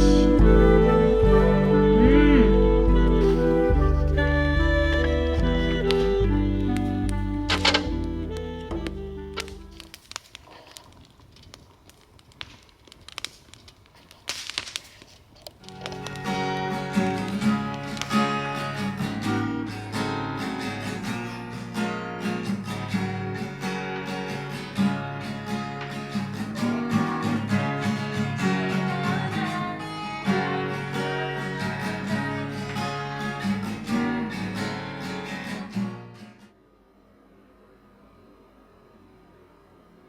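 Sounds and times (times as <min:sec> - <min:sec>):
strummed acoustic guitar music: 0:00.0 - 0:10.0, 0:15.6 - 0:36.5.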